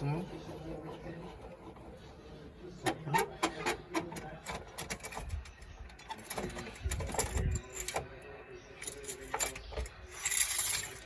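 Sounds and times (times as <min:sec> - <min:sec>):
metal tools clicking and knocking: 0:02.9 - 0:11.0.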